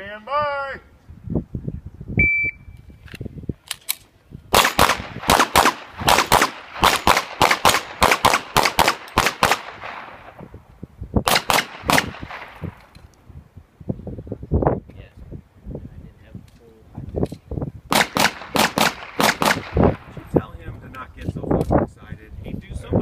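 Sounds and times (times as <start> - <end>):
shot timer beep: 2.2 - 2.8
pistol shots: 4.5 - 10.4, 11.2 - 12.8, 17.9 - 20.1.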